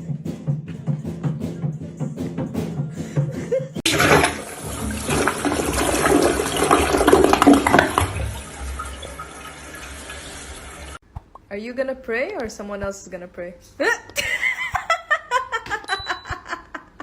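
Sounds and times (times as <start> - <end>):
music with steady beat: 0.0 - 3.8
running water rushing: 3.9 - 11.0.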